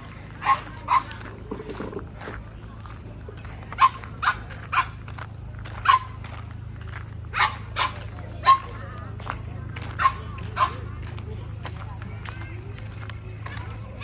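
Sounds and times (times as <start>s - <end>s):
steady low hum: 0.0s - 14.0s
dog barking: 0.4s - 1.2s, 3.7s - 5.0s, 5.8s - 6.2s, 7.3s - 8.8s, 10.0s - 10.8s.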